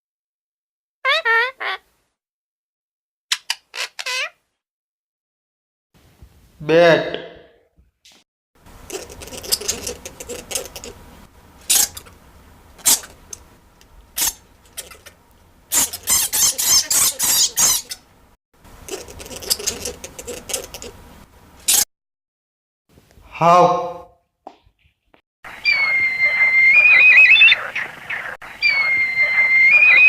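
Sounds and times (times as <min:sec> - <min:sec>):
bat squeaks and chittering: 0:03.3 - 0:04.4, 0:08.9 - 0:11.0, 0:11.6 - 0:12.2, 0:12.8 - 0:13.4, 0:14.2 - 0:18.1, 0:18.9 - 0:21.0, 0:25.6 - 0:30.0.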